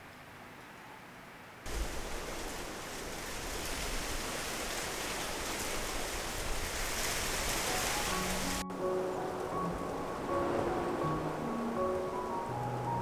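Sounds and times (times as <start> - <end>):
heavy rain falling: 1.7 - 11.7.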